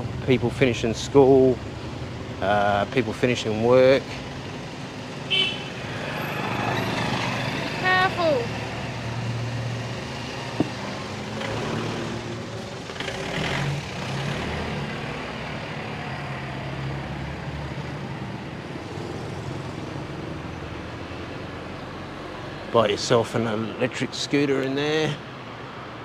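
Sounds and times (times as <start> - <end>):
passing traffic: 0.0 - 26.0.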